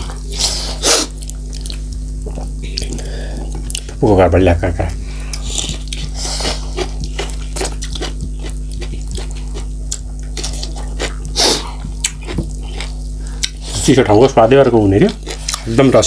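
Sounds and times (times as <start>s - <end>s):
steady low hum: 0.0s - 16.0s
chewing cucumber with wet crunches: 1.2s - 3.0s, 5.3s - 13.8s, 15.0s - 15.8s.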